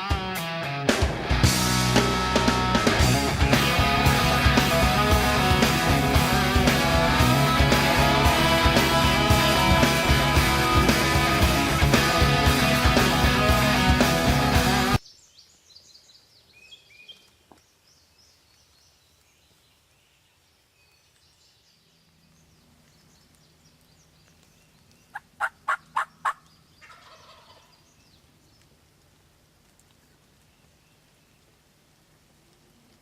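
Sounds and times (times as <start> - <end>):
faint songbird chirps: 15.0 - 28.8
wild turkey gobbling: 25.1 - 28.0.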